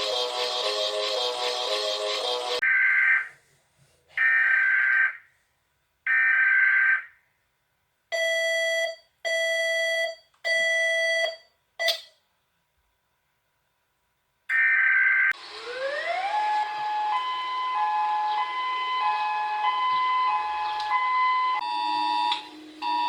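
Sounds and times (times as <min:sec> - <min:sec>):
buzzing alarm tones: 0:14.6 - 0:23.0.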